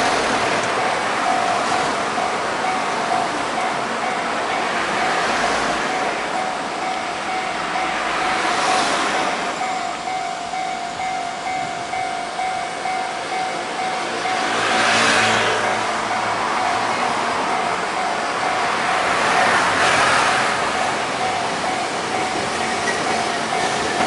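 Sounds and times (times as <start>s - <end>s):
train passing: 0.0s - 24.0s
higher-pitched bell: 0.8s - 15.0s, 20.6s - 24.0s
level crossing electronic bell: 9.2s - 14.4s.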